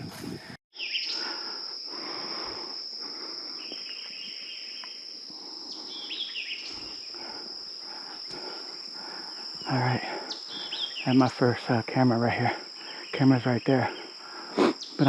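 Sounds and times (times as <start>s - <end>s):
insects trilling: 0.8s - 15.0s.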